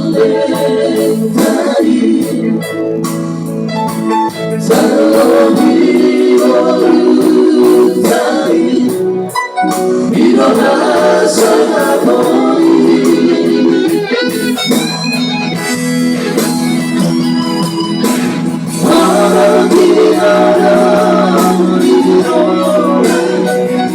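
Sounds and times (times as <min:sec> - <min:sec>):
instrumental accompaniment: 0:00.0 - 0:23.9
person singing: 0:18.8 - 0:23.9.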